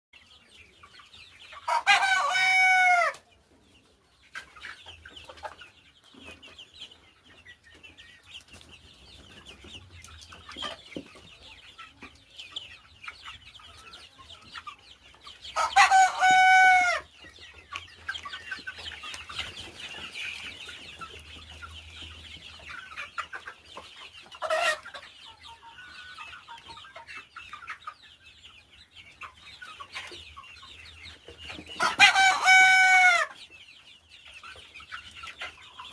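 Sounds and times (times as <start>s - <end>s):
chickens clucking: 0.2s - 35.9s
loud chicken squawk: 1.7s - 3.2s, 15.6s - 17.1s, 31.8s - 33.4s.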